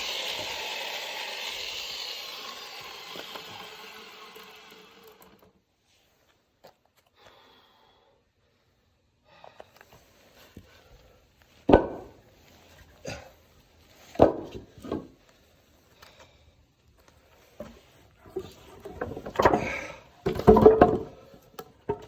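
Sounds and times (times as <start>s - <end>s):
electric chainsaw winding down: 0.0s - 5.6s.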